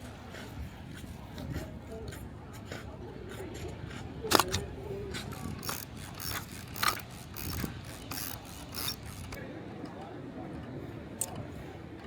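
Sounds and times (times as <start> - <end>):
film winding ratchet: 4.3 - 9.4.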